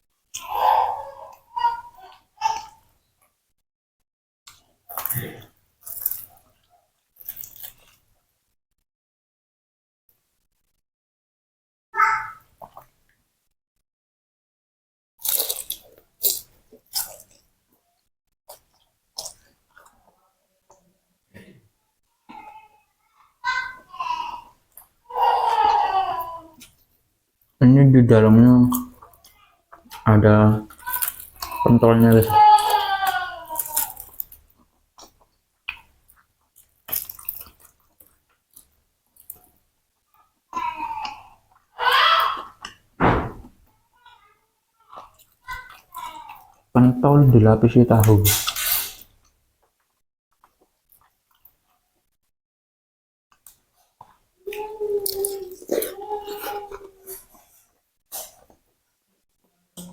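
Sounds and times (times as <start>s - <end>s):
crunchy bites and chewing: 4.9s - 6.4s, 7.2s - 8.0s, 15.2s - 17.4s, 30.7s - 39.4s.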